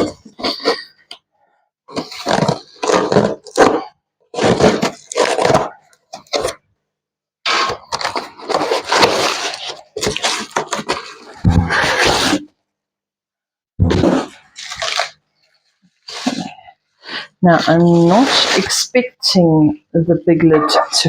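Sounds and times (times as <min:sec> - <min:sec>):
packaging tearing and crackling: 0:01.9 - 0:06.6.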